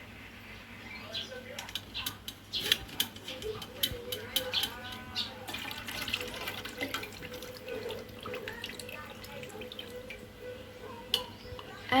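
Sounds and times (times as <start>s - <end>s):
utensils and pot clattering: 1.6s - 10.2s
running tap water: 5.5s - 10.1s.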